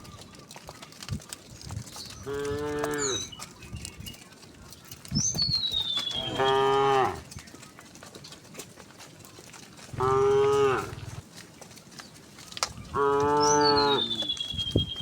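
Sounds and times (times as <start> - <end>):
cows mooing: 2.2 - 3.3, 6.1 - 7.4, 9.9 - 11.2, 12.9 - 14.4.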